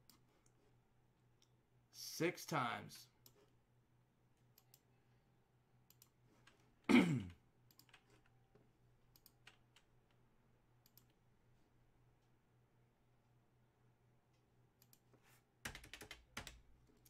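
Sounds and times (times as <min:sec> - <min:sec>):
computer mouse clicks: 0:04.6 - 0:04.9, 0:05.9 - 0:06.6, 0:07.7 - 0:08.3, 0:09.1 - 0:09.9, 0:10.8 - 0:11.2, 0:14.8 - 0:15.1.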